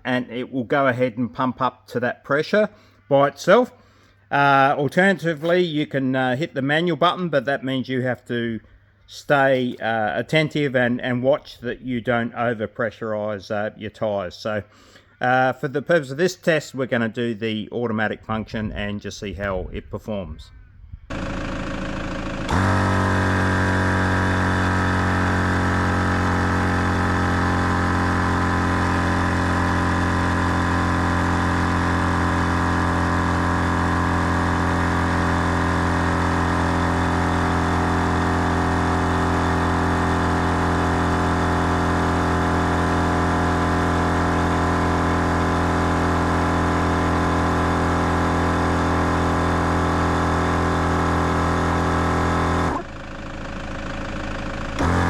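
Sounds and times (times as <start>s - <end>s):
air compressor running: 21.1s - 55.0s.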